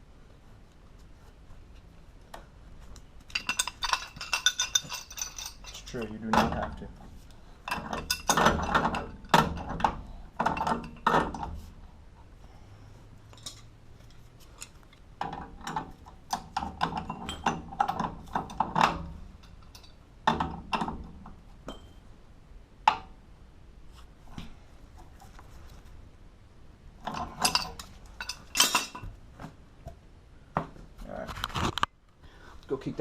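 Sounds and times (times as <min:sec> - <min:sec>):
metal tools clinking: 0:03.3 - 0:06.9, 0:07.6 - 0:11.6, 0:13.3 - 0:20.9, 0:27.0 - 0:29.1.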